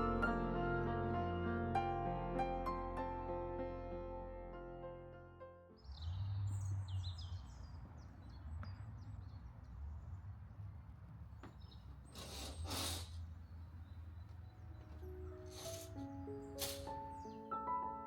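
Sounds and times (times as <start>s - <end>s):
small birds chirping: 5.8s - 10.3s, 11.3s - 18.0s
short hissing swishes: 12.2s - 13.2s, 16.6s - 17.0s.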